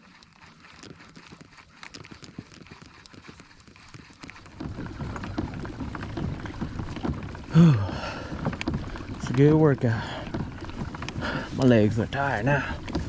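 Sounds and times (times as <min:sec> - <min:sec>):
kayak pedal drive clicking: 0:02.7 - 0:13.0
low rumbling noise: 0:04.5 - 0:13.0.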